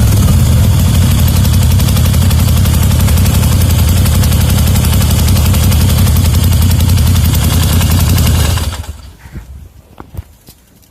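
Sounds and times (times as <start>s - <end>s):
engine ticking: 0.0s - 9.2s
motorcycle engine idling: 0.0s - 9.2s.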